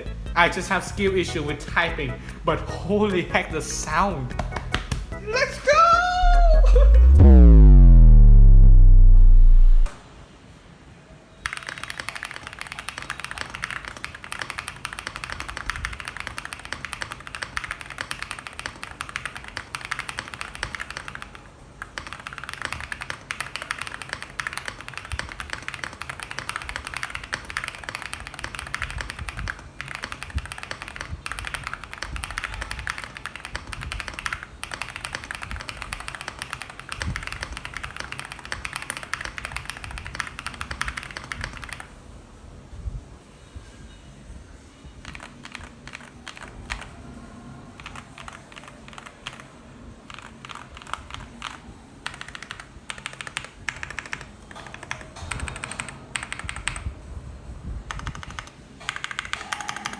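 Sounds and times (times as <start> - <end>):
fast mechanical keyboard typing: 11.4 - 41.9, 45.0 - 47.0, 47.8 - 57.0, 57.9 - 59.9.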